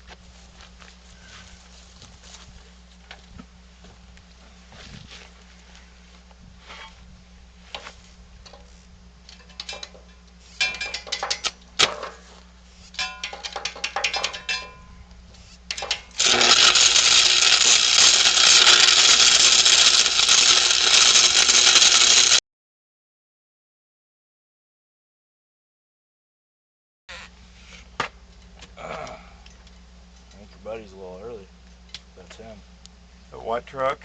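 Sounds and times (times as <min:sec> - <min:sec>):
crackling electric arc hiss: 0:16.1 - 0:22.4.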